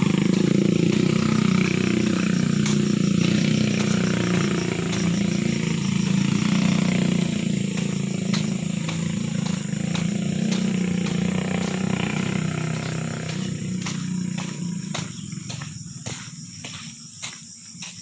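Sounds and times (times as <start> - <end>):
motorcycle engine running: 0.0 - 17.9.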